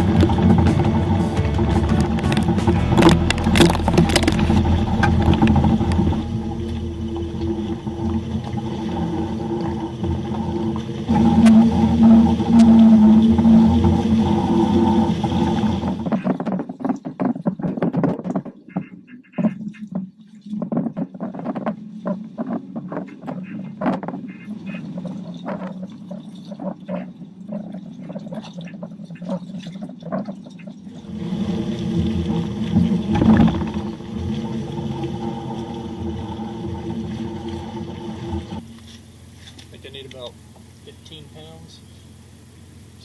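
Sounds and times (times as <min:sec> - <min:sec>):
sharp clicks and crackles: 0:00.0 - 0:11.8
pickup truck engine running: 0:00.0 - 0:16.3, 0:30.9 - 0:43.0.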